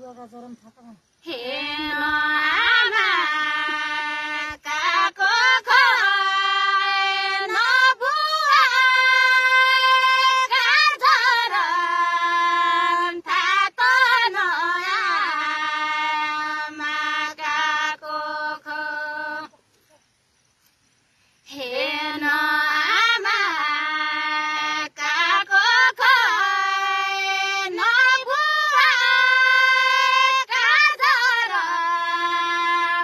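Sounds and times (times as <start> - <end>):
woman singing unaccompanied: 0.0 - 19.6, 21.5 - 33.0.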